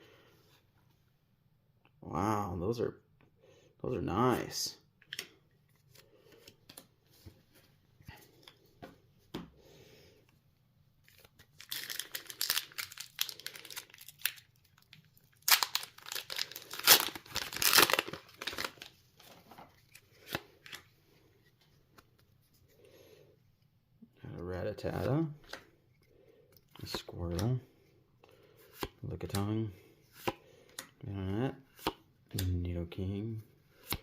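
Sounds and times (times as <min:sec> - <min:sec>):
wrapper tearing and crinkling: 0:11.1 - 0:18.9.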